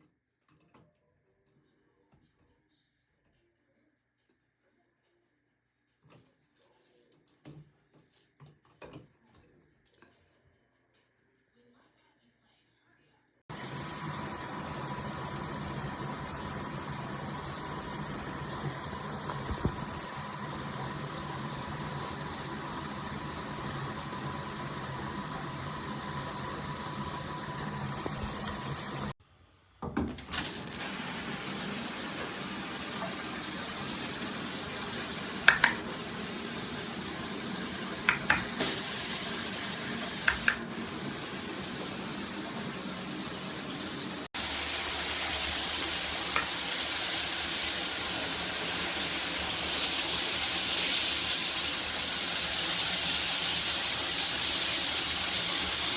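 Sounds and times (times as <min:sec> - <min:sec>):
shower water spraying: 0:13.5 - 0:29.2, 0:30.2 - 0:55.9.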